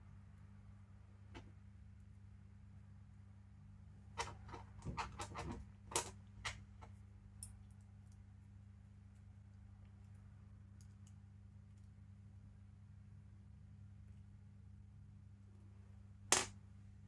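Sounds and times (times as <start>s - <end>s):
low electrical hum: 0.0s - 17.0s
light clicks and taps of metal parts: 4.2s - 12.0s.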